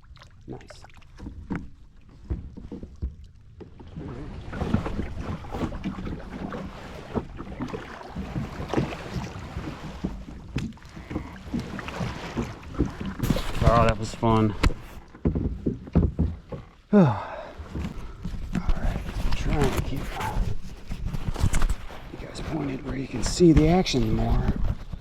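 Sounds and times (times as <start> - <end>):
water slapping against hull: 0.0 - 25.0
small knocks on hull: 0.9 - 16.8, 17.6 - 25.0.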